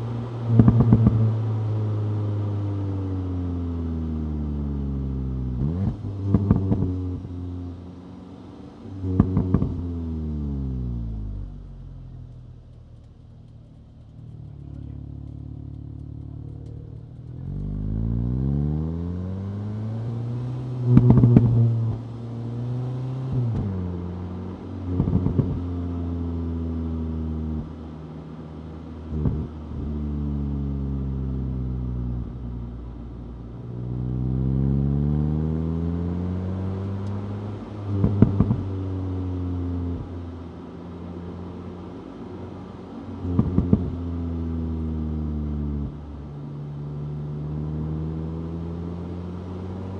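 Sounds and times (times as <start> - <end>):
exhaust crackles: 0.0 - 1.9, 2.7 - 27.9
car engine revving through gears: 0.0 - 4.0, 4.7 - 7.4, 8.0 - 12.1, 15.2 - 27.9, 29.0 - 32.4, 33.6 - 40.7, 41.4 - 46.1, 46.8 - 49.9.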